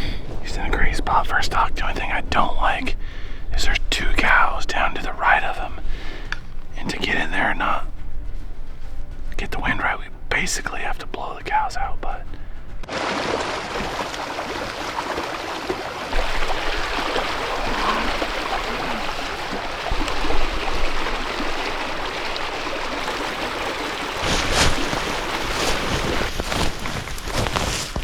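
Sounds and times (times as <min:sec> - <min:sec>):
running water: 0:10.4 - 0:27.1
short rustles or knocks: 0:24.2 - 0:28.0.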